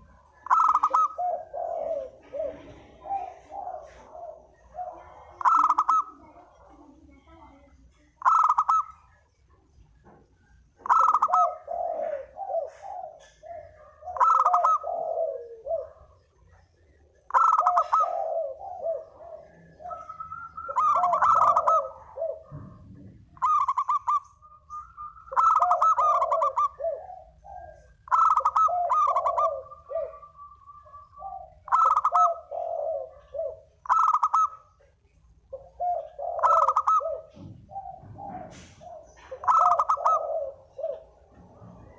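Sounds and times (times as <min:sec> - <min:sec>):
dove cooing: 0:00.0 - 0:41.9.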